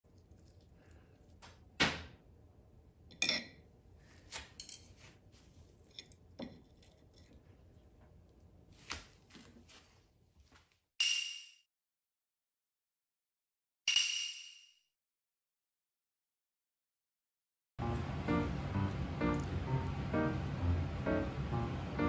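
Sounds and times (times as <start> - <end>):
dishes and utensils clinking: 3.1 - 3.6.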